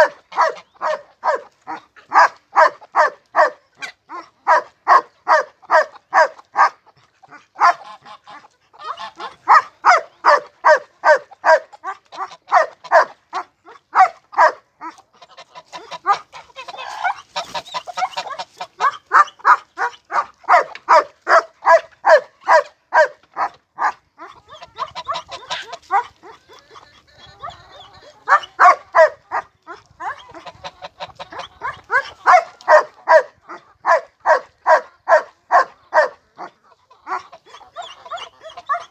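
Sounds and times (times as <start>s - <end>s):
animal calling: 0.0s - 3.5s, 24.2s - 38.9s.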